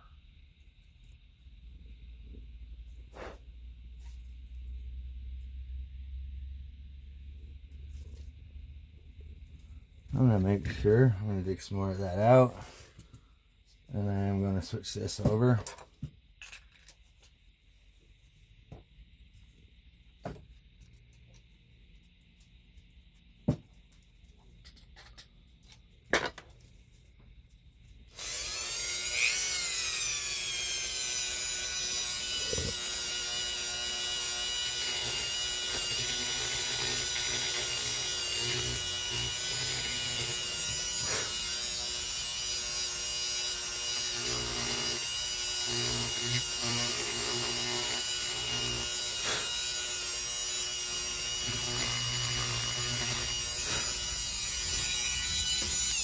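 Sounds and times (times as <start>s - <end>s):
rotary tool high whine: 28.1s - 56.0s.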